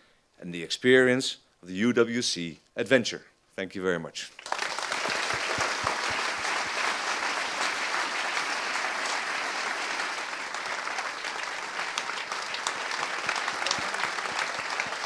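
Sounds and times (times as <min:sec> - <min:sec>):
audience applauding: 0:04.4 - 0:15.0.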